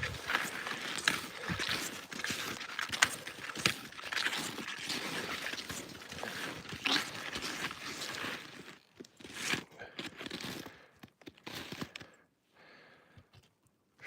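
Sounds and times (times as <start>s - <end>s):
steps crunching in deep snow: 0.0s - 8.7s.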